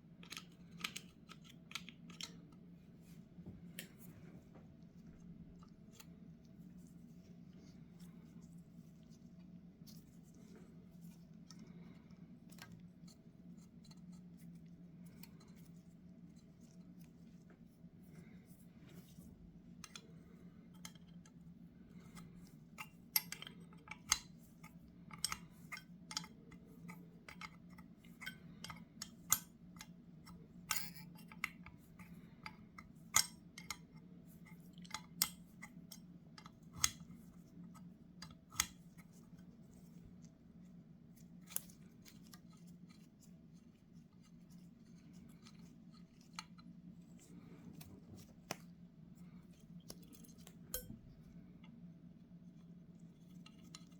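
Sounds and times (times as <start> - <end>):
small metal parts clicking: 30.7 - 31.1
steady low hum: 35.4 - 53.8.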